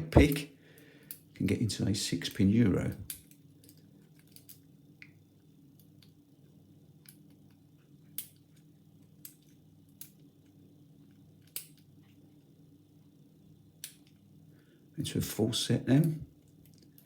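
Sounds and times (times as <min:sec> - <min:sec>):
lock pick clicking metallically: 0:11.4 - 0:11.8, 0:13.8 - 0:14.2.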